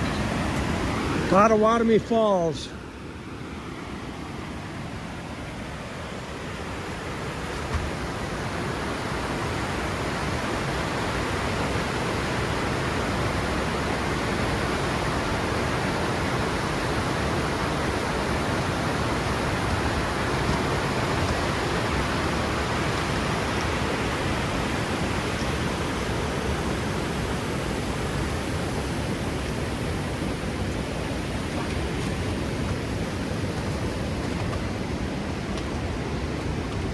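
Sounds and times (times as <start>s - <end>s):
waterfall rushing: 0.0s - 36.9s.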